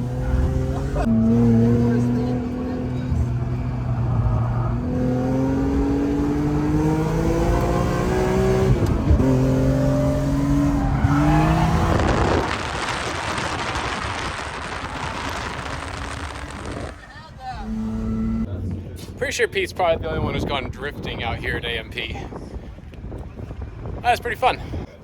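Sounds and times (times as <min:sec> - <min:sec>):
race car engine accelerating: 0:00.0 - 0:18.6
loud rough rushing noise: 0:03.0 - 0:18.5.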